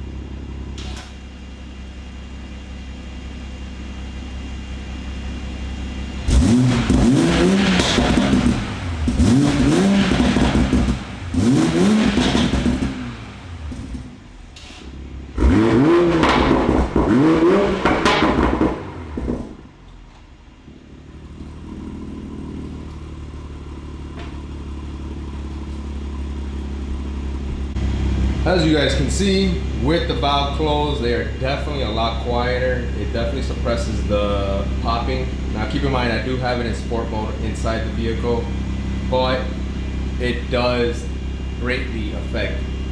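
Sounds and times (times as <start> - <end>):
car engine revving and idling: 0.0 - 42.9.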